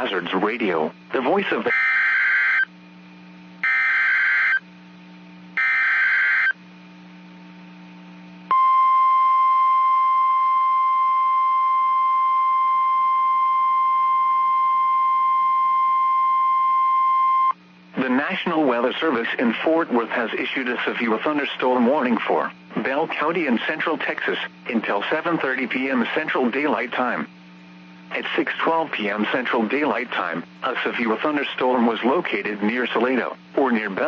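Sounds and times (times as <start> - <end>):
steady warning alarm tone: 1.6 - 2.8, 3.6 - 4.7, 5.6 - 6.6.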